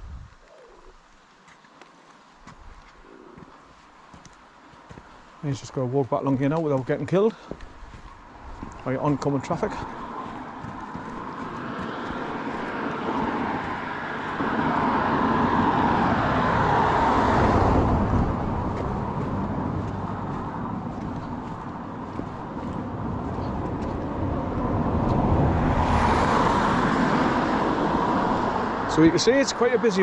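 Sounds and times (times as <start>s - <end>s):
cars passing: 4.2s - 30.0s.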